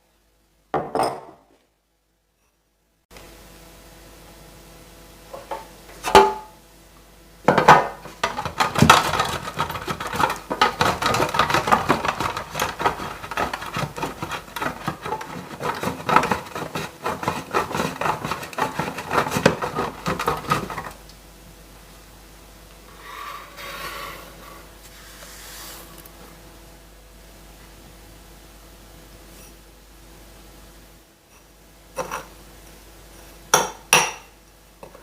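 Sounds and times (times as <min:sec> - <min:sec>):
scraping strokes by hand: 0:22.9 - 0:26.0.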